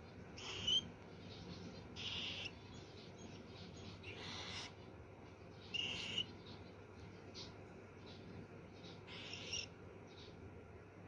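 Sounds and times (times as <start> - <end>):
bird rasping calls: 0.4 - 0.9, 2.0 - 2.6, 3.8 - 4.8, 5.6 - 6.4, 8.9 - 9.7.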